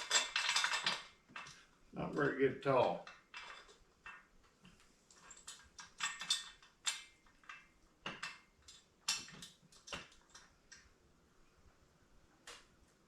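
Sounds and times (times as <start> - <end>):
metal tools clinking: 0.0 - 1.6, 2.8 - 4.3, 5.2 - 10.5.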